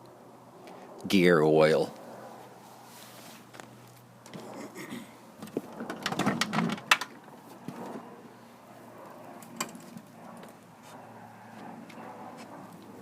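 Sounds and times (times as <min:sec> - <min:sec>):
clicks and rattles: 0:05.4 - 0:07.2.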